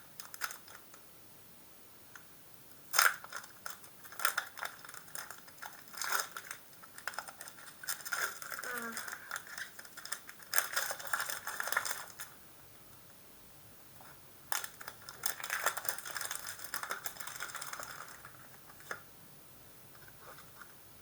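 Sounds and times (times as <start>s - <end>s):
wrapper and cards crinkling: 0.2s - 0.9s, 2.9s - 12.4s, 14.5s - 19.0s.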